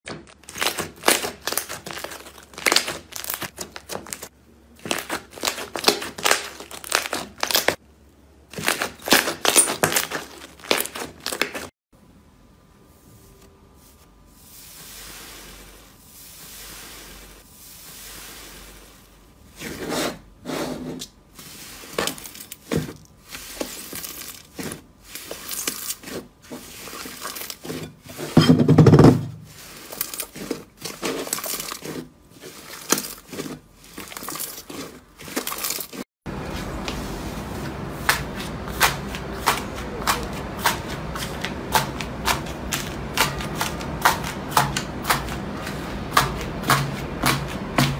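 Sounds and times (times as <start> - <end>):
slime crackling and crunching: 0.2 - 7.8, 8.5 - 11.7, 21.4 - 27.9, 29.5 - 36.0.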